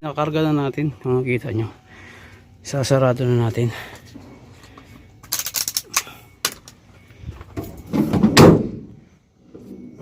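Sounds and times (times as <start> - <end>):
heavy door thud: 7.9 - 9.0.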